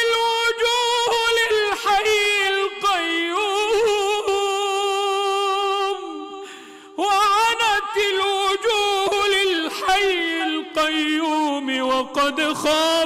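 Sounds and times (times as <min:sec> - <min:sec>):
person reciting melodically: 0:00.0 - 0:13.0.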